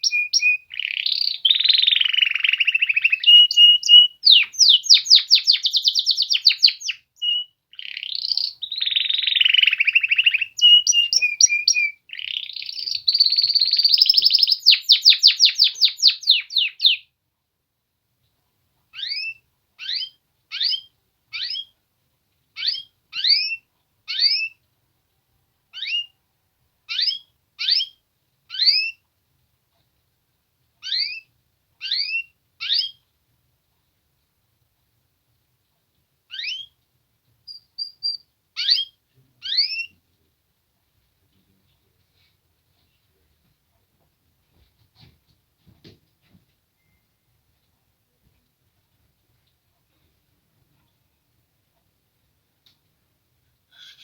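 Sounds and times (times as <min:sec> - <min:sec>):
upswept chirps: 0:00.0 - 0:17.0, 0:37.4 - 0:39.9
canaries singing trills: 0:00.0 - 0:17.1, 0:19.0 - 0:21.8, 0:22.6 - 0:24.6, 0:25.7 - 0:26.2, 0:26.9 - 0:29.0, 0:30.8 - 0:33.0, 0:36.3 - 0:36.8, 0:37.4 - 0:39.9, 0:53.7 - 0:54.0.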